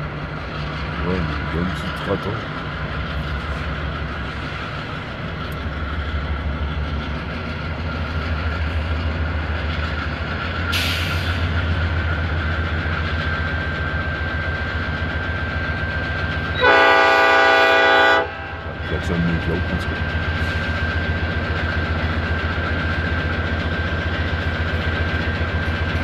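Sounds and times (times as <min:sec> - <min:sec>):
diesel locomotive engine rumble: 0:00.0 - 0:26.0
locomotive air horn: 0:16.6 - 0:18.8.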